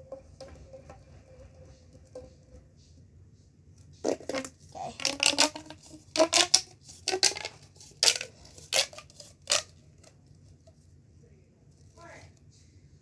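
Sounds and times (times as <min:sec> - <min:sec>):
plastic pop tube crackling: 0:00.0 - 0:03.1, 0:03.8 - 0:10.8.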